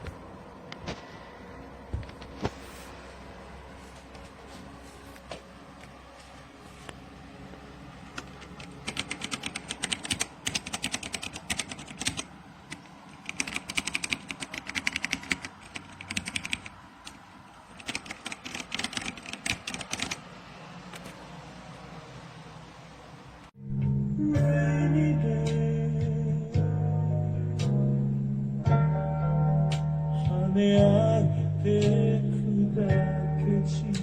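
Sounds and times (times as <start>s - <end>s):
mechanical keyboard typing: 8.2s - 20.2s.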